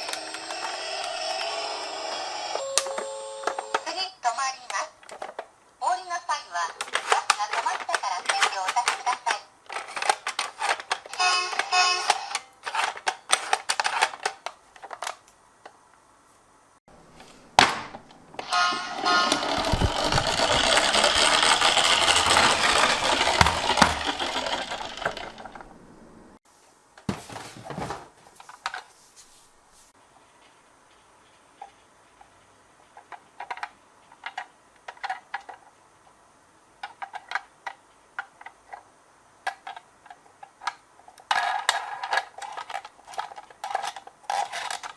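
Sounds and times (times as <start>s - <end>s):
toy car rolling: 0.0s - 4.0s, 6.6s - 15.2s, 18.4s - 25.8s, 39.5s - 44.9s
toy cars clattering on plastic track: 4.7s - 5.5s, 6.6s - 15.2s, 18.4s - 25.7s, 31.3s - 35.8s, 36.8s - 44.9s.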